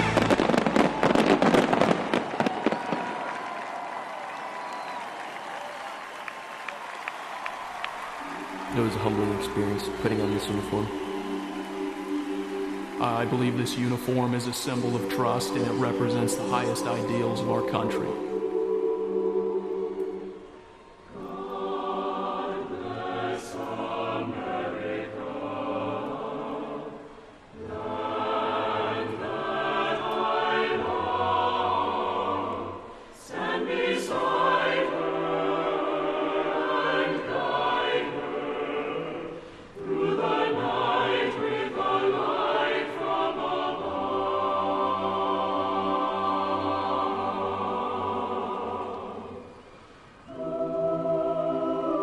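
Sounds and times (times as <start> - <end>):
musical accompaniment: 0.0 - 1.1, 8.2 - 26.2
choir singing: 0.0 - 2.2, 4.5 - 52.0.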